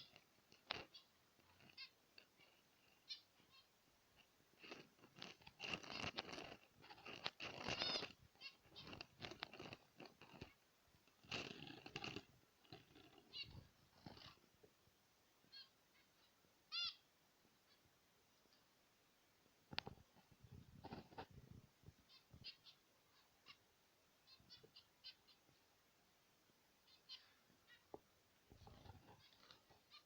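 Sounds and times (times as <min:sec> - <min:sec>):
scratchy bird chatter: 0:00.0 - 0:14.5, 0:19.8 - 0:21.4, 0:22.1 - 0:23.6, 0:26.9 - 0:30.0
finches calling with nasal beeps: 0:05.9 - 0:09.8, 0:22.1 - 0:23.6, 0:26.8 - 0:27.9.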